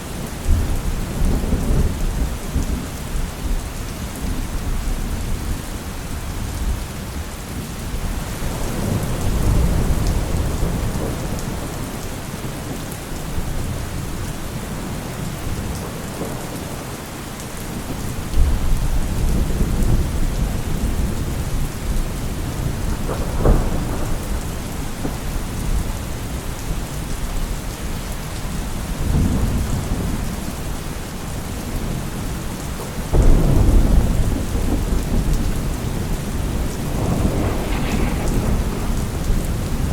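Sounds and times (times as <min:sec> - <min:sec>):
heavy rain falling: 0:00.0 - 0:39.9
thunder rumbling: 0:17.8 - 0:26.4, 0:32.9 - 0:39.9
sharp thunderclap: 0:22.4 - 0:25.8, 0:33.1 - 0:39.9.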